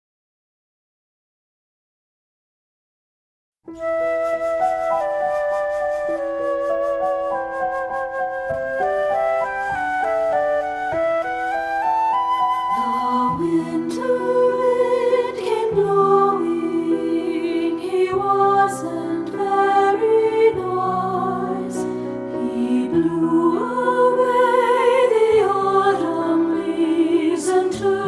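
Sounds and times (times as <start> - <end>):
flute melody with vibrato: 3.7 - 15.6
soft piano chords: 3.7 - 28.0.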